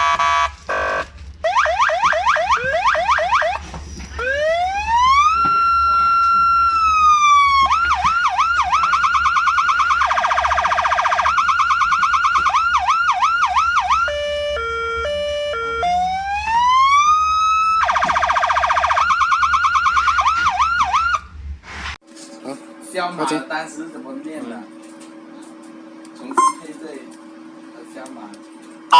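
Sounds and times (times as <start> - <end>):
car siren wail yelp and warble: 0.0 - 21.3.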